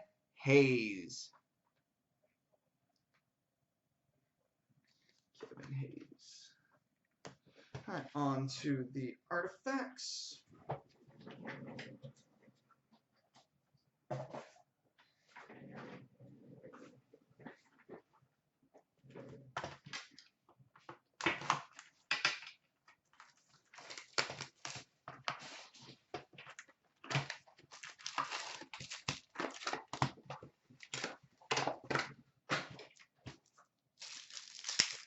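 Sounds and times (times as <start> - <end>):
foil wrappers crinkling and tearing: 23.7 - 24.8, 27.3 - 30.0, 34.0 - 35.0.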